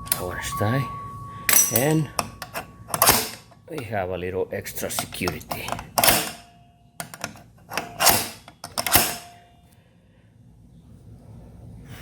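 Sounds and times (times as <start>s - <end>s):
metal bolt scraping slide: 1.5s - 3.6s, 7.0s - 9.4s
metal lock clicks: 1.5s - 3.9s, 4.9s - 9.4s.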